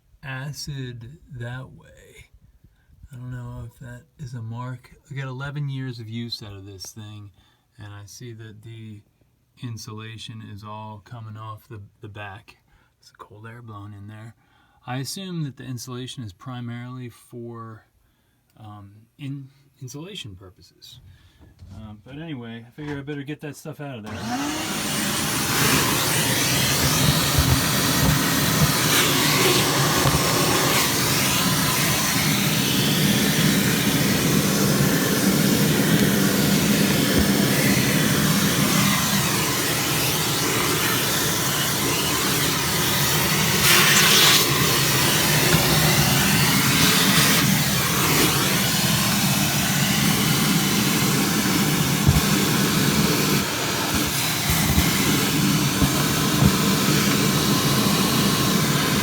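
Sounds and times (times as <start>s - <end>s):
vacuum cleaner running: 24.1s - 59.0s.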